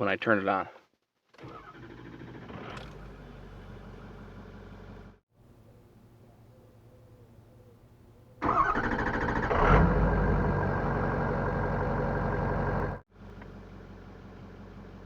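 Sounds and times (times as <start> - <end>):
diesel engine starting and idling: 1.4 - 5.2, 8.4 - 15.0
starter cranking: 8.4 - 9.9.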